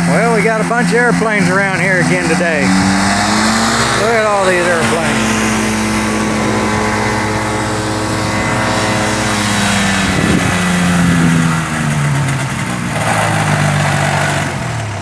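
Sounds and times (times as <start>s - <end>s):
light airplane piston engine: 0.0s - 13.6s
wind noise: 2.6s - 15.0s.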